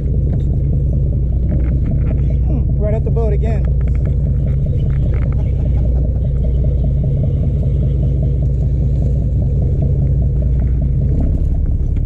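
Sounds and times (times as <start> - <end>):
boat engines rumbling: 0.0 - 12.0.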